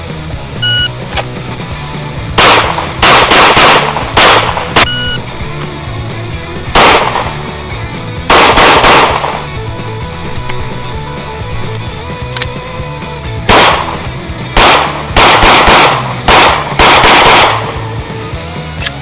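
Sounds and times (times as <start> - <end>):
rock music: 0.0 - 19.0
short high beeps: 0.6 - 0.9, 4.8 - 5.2
gunshots: 2.0 - 5.7, 6.4 - 7.6, 8.2 - 9.8, 13.4 - 18.0.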